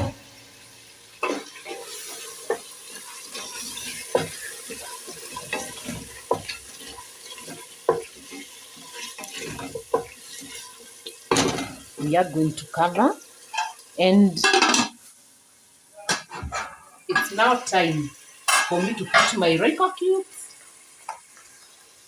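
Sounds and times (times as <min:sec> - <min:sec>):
faint sizzle of pot cooking: 0:00.0 - 0:22.0
spoon knocking and scraping pot: 0:01.2 - 0:12.0, 0:14.4 - 0:15.0, 0:18.5 - 0:19.4.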